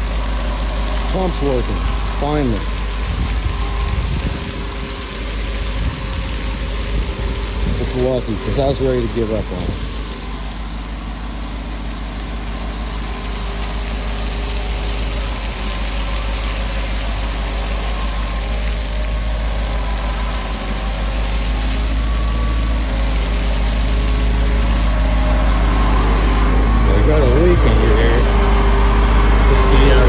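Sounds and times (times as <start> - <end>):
engine running steadily: 0.0 - 30.0
water pump hiss: 0.0 - 30.0.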